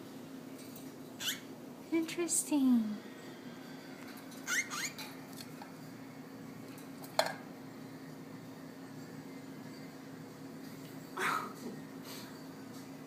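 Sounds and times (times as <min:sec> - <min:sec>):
cockatiel chirping: 0:01.2 - 0:01.4.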